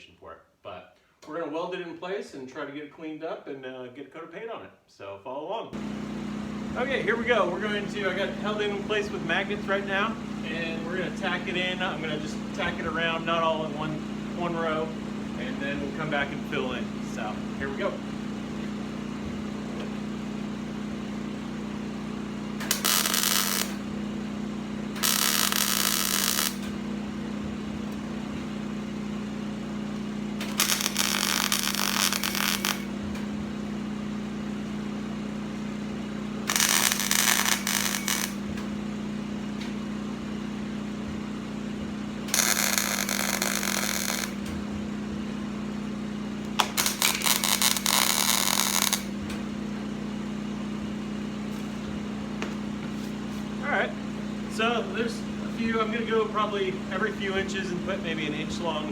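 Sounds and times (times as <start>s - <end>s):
steady low hum: 5.8s - 58.9s
welder tack-welding steel: 22.6s - 23.9s, 24.9s - 26.9s, 30.4s - 33.3s, 36.4s - 38.7s, 42.3s - 44.6s, 46.5s - 49.4s.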